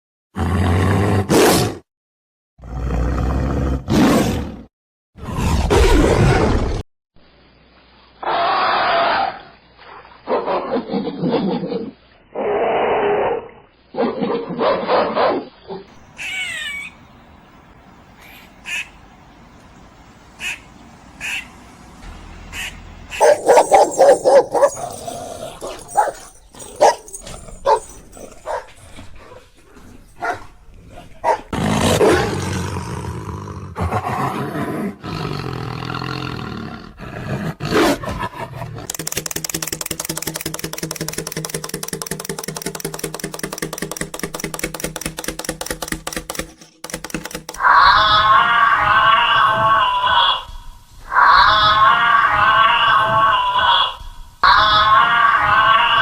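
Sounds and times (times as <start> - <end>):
dog barking: 23.2 - 28.7, 30.2 - 30.5, 31.2 - 31.5
dog growling: 23.2 - 34.4.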